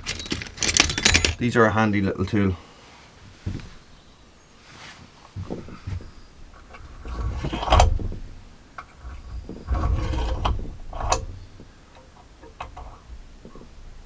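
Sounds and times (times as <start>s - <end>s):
metal tool clicking and clattering: 0.0s - 1.4s.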